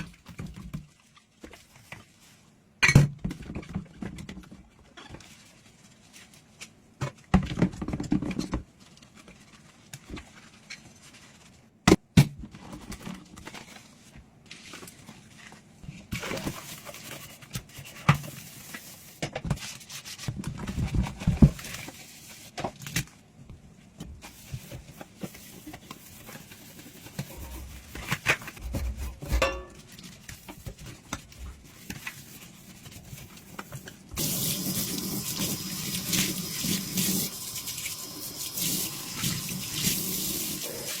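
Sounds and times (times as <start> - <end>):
scrubbing dishes: 26.1 - 29.8
dishes clinking: 29.3 - 29.8
faucet water running: 34.2 - 41.0.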